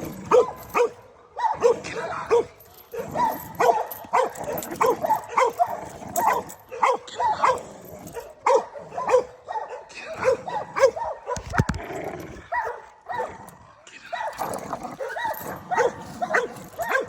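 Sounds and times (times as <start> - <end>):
dogs barking: 0.0 - 11.7, 12.5 - 17.0.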